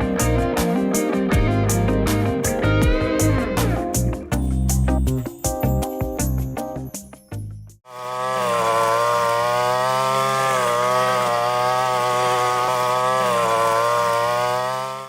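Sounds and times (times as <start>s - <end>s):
small brush cutter engine running: 7.8s - 15.0s.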